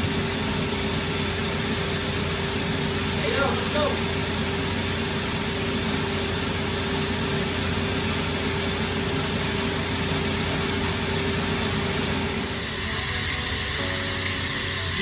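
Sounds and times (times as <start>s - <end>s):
vacuum machine running: 0.0s - 15.0s.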